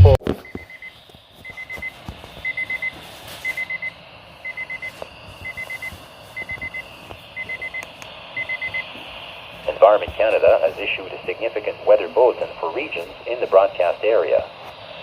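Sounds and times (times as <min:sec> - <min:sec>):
alarm high beeps: 0:01.5 - 0:07.8, 0:08.4 - 0:08.9.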